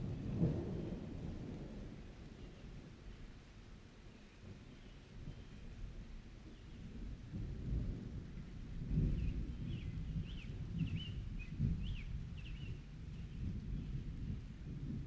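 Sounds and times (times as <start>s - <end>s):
rolling thunder: 0.0s - 2.0s.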